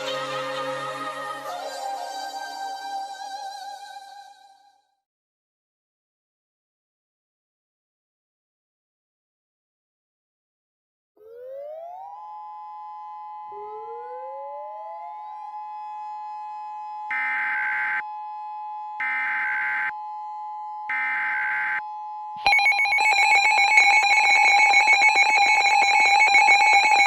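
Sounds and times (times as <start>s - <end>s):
rapidly pulsing multi-tone alarm: 11.2s - 27.0s
tone gliding upward: 13.5s - 15.7s, 22.4s - 27.0s
electronic two-tone hum: 16.4s - 27.0s.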